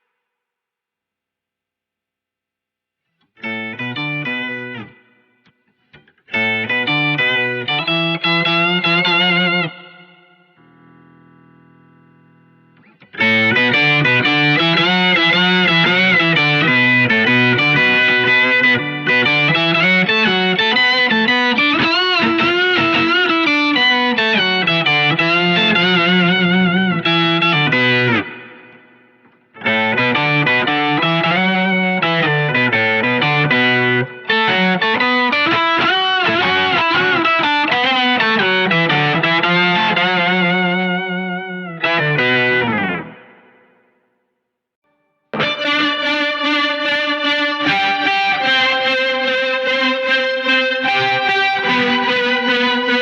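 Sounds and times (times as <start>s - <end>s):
overdriven electric guitar: 3.1s - 44.1s, 44.9s - 53.0s.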